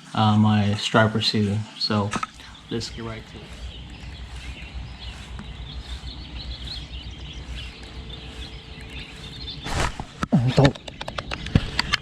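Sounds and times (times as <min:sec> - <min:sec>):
faint bird chirps: 0:01.7 - 0:12.0
low rumble: 0:02.1 - 0:10.2.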